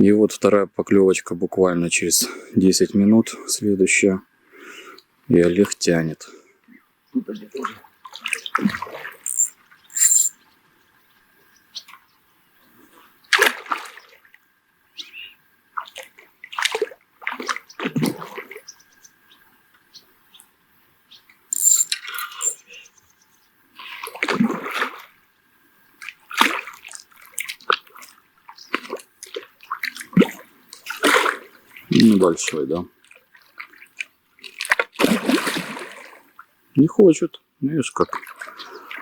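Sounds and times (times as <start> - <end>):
fish splashing in water: 13.3 - 14.2, 26.0 - 28.1, 28.7 - 31.6, 33.3 - 36.3.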